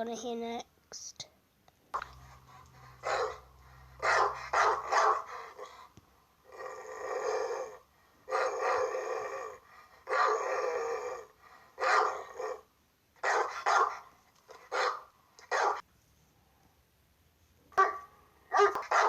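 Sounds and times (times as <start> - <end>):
big dog barking: 2.0 - 5.9, 7.2 - 15.8, 17.7 - 19.0
big dog growling: 6.5 - 11.4.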